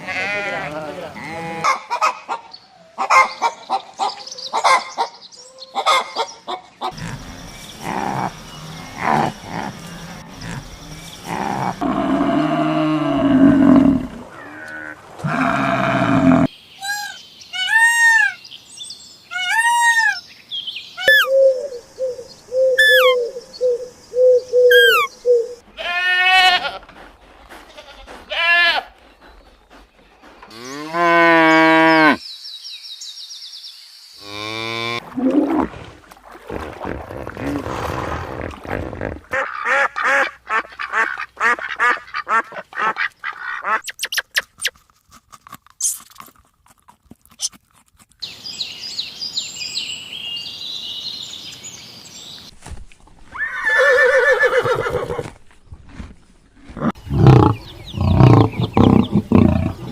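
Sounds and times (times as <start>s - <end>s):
animal bleats: 0.0s - 1.8s, 11.3s - 16.5s, 25.7s - 26.9s, 27.5s - 28.9s
farm animals calling: 0.0s - 18.4s, 21.0s - 32.2s, 38.4s - 44.6s, 56.8s - 59.9s.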